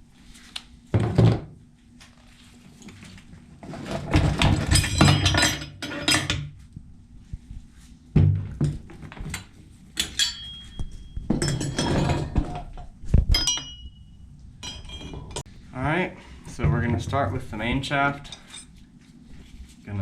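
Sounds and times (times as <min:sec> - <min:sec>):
struck metal part ringing: 0:10.0 - 0:12.0, 0:13.4 - 0:15.2.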